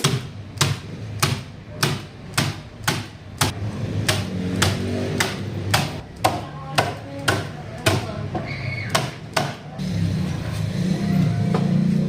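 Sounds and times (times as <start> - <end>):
hammer striking nails: 0.0 - 8.1.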